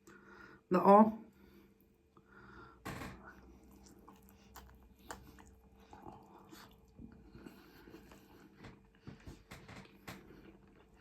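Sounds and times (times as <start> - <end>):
person chewing food: 3.2 - 11.0.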